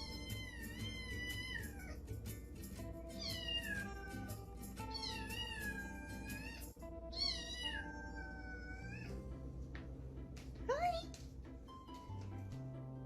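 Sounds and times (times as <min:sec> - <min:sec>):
cat meowing: 0:00.0 - 0:02.0, 0:03.2 - 0:04.3, 0:04.9 - 0:09.2
background music: 0:00.0 - 0:13.0.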